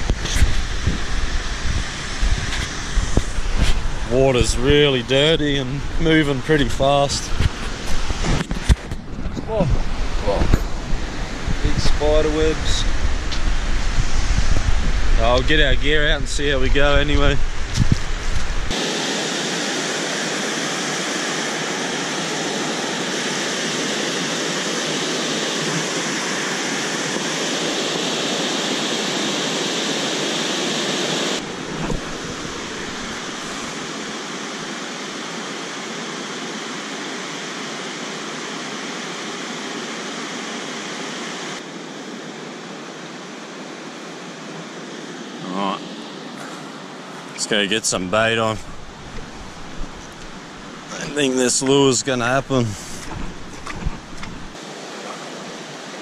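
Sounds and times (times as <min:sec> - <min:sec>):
floodwater rushing: 0:18.2 - 0:56.0.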